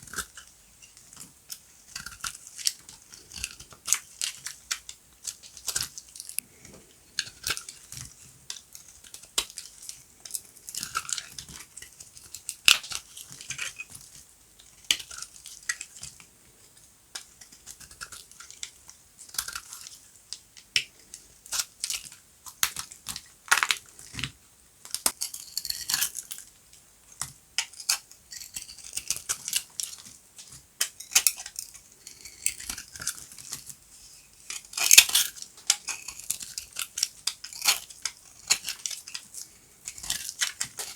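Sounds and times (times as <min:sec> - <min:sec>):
soap crunching snaps: 0:22.6 - 0:23.8.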